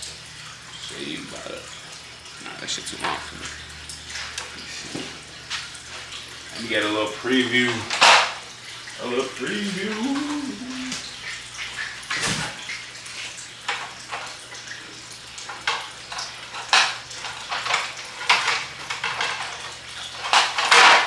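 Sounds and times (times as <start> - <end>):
plastic pieces knocking and clattering: 20.2 - 21.0.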